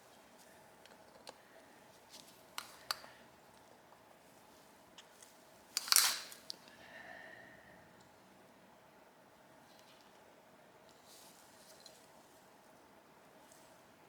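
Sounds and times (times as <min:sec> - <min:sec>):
metal parts clicking on workbench: 0:05.8 - 0:06.6.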